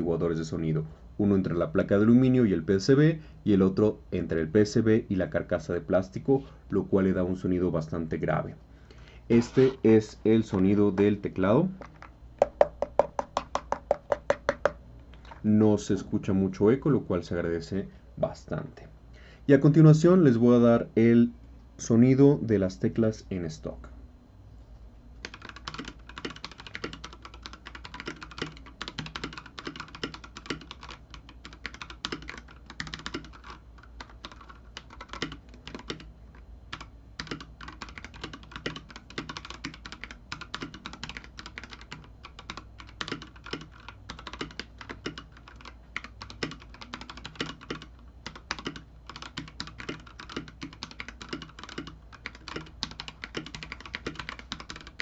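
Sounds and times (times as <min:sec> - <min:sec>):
typing on mechanical keyboard: 0:11.8 - 0:14.8, 0:25.2 - 0:36.1, 0:36.7 - 0:55.0.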